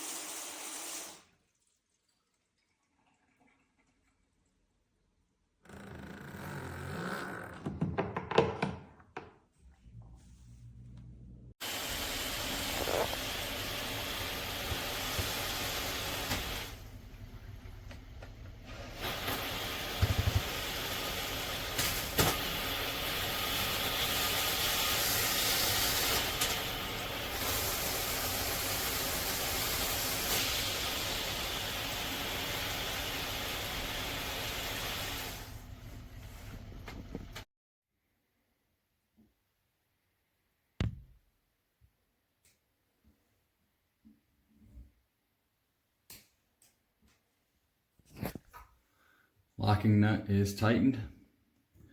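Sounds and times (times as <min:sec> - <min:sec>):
shower head spraying water: 0:11.6 - 0:16.9, 0:19.0 - 0:35.7.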